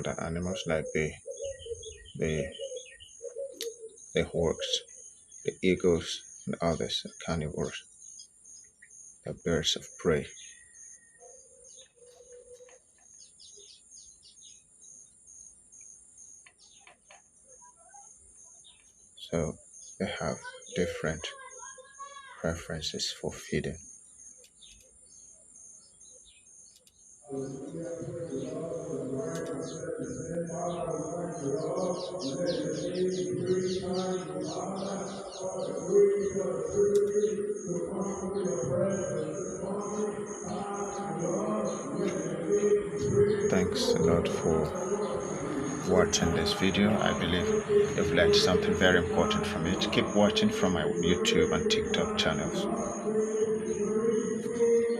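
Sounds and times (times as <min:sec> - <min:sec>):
insect chorus trilling: 0:00.0 - 0:54.9
songbird chirps: 0:00.0 - 0:54.9
chant-like vocal music: 0:27.3 - 0:54.9.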